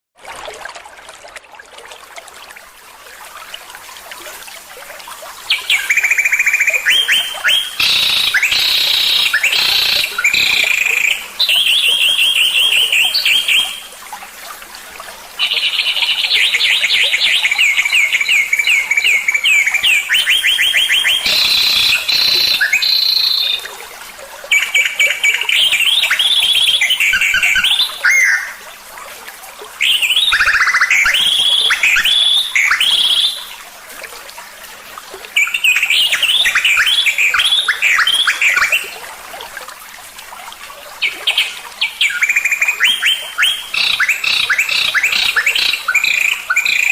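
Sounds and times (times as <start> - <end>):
songbird trilling: 5.5 - 13.8, 15.4 - 23.6, 24.5 - 28.6, 41.3 - 46.9.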